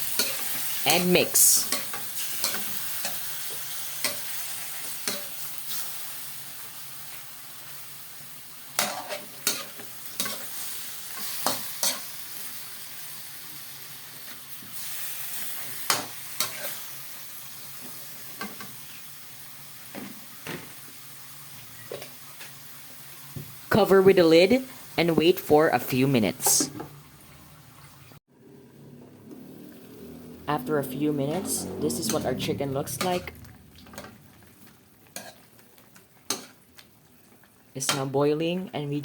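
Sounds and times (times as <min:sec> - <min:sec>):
chicken sizzling in a pan: 0:00.0 - 0:23.7, 0:32.0 - 0:38.1.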